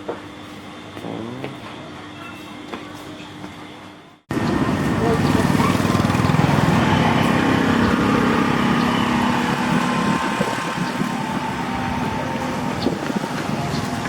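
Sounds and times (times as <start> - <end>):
small engine running: 4.3 - 14.0.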